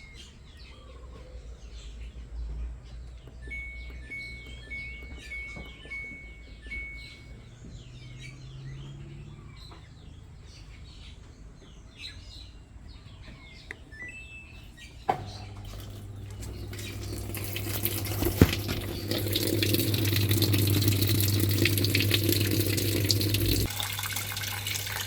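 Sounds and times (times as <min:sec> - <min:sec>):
faint bird chirps: 0:00.0 - 0:11.3, 0:12.0 - 0:17.5
washing machine hum: 0:03.2 - 0:07.8, 0:15.1 - 0:25.0
washing machine click: 0:15.1 - 0:23.7
water pouring into drum: 0:15.6 - 0:25.0.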